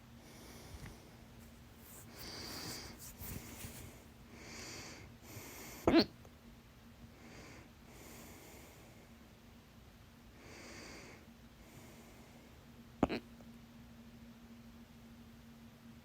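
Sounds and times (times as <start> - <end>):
soft breathing: 0.1 - 5.9.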